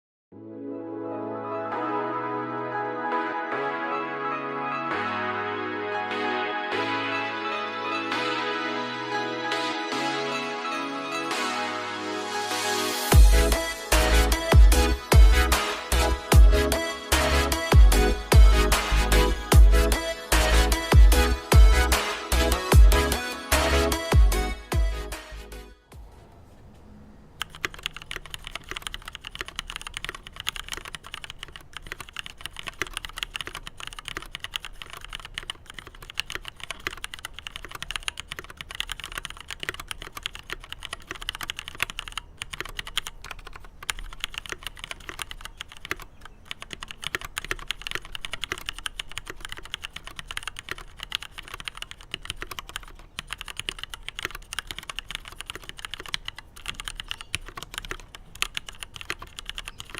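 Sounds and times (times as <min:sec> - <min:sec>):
fast typing on mechanical keyboard: 0:27.4 - 0:59.9.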